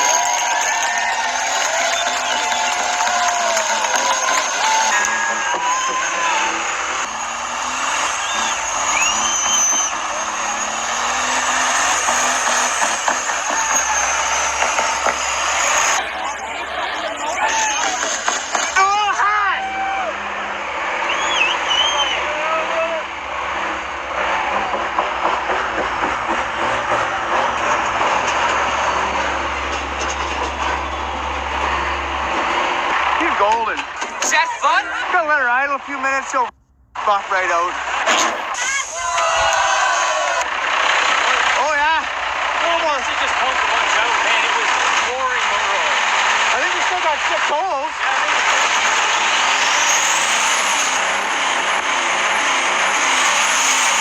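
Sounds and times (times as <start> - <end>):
spinning tyres rushing: 0.0 - 54.0
truck engine revving high: 0.0 - 54.0
steady low drone: 22.6 - 34.0.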